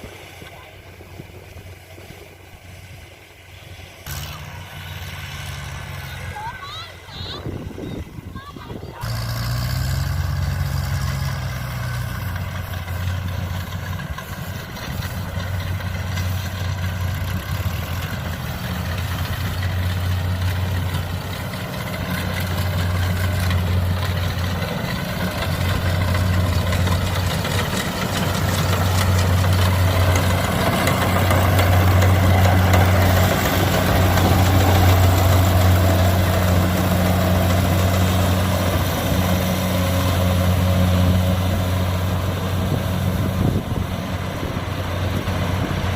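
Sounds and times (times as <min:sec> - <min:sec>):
combine harvester engine humming: 0:00.0 - 0:45.9
machinery whirring: 0:10.2 - 0:45.9.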